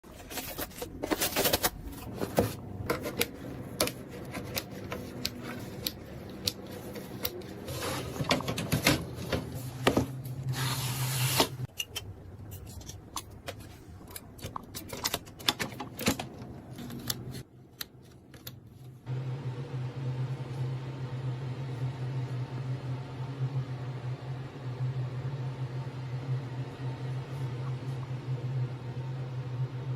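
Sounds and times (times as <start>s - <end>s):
steady low hum: 16.1s - 29.9s.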